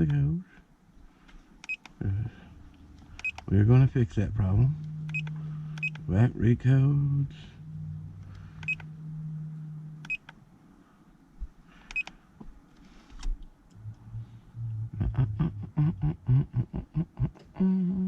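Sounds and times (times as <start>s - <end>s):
rapid pulsing pitched tone: 3.5s - 10.2s
short key-press beeps: 11.9s - 12.1s.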